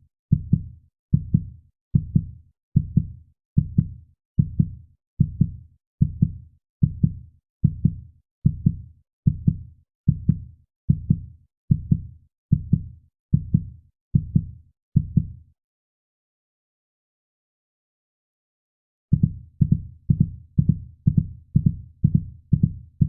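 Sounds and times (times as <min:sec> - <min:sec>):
heartbeat thuds: 0:19.2 - 0:23.0.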